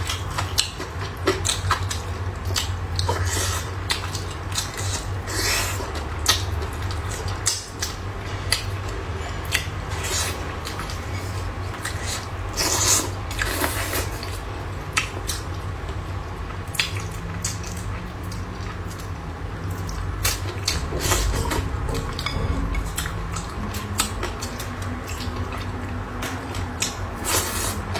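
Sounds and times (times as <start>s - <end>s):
wet chewing: 9.5s - 27.9s.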